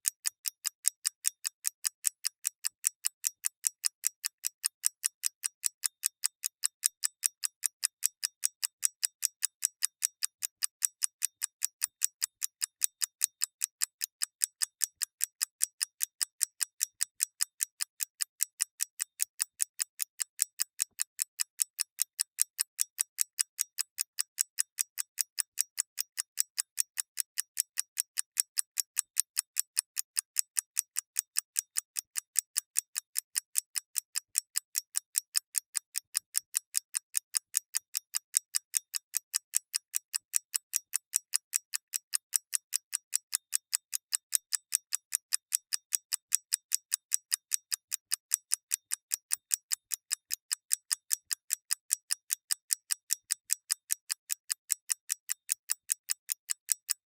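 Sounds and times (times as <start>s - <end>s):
mechanical clock ticking: 0.0s - 57.0s.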